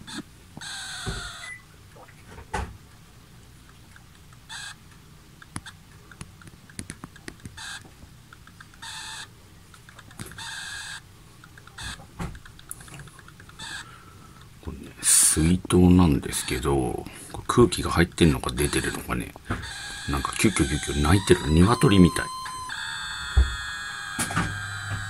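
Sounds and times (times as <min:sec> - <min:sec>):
faint ticks: 0:03.6 - 0:14.6
water bottle lid squeaking: 0:18.4 - 0:25.0.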